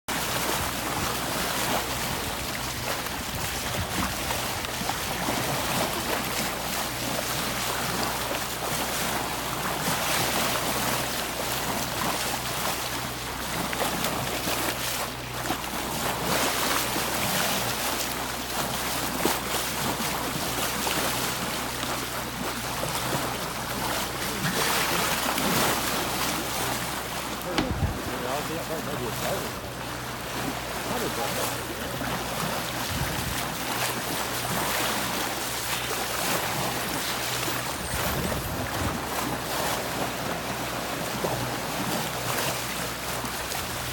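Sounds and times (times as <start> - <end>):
water splashing past a hull: 0.1 - 43.9
wind on microphone: 2.0 - 6.0, 27.5 - 28.4, 32.8 - 33.6, 37.6 - 39.3.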